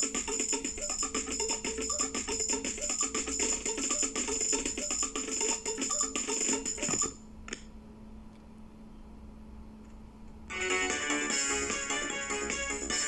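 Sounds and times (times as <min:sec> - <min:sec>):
polyphonic phone ringtone: 0:00.0 - 0:07.2
faint speaker hum: 0:00.0 - 0:13.0.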